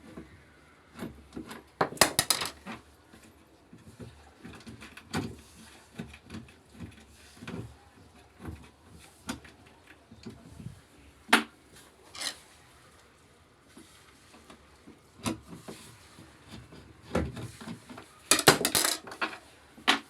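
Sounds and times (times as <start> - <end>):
objects knocking and clattering: 1.8 - 2.8, 12.2 - 12.4, 18.3 - 20.0.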